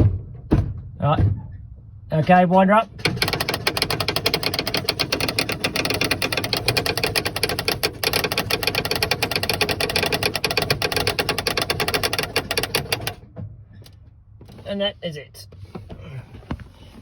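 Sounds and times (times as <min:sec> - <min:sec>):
winch mechanism clicking rapidly: 0:03.0 - 0:13.2.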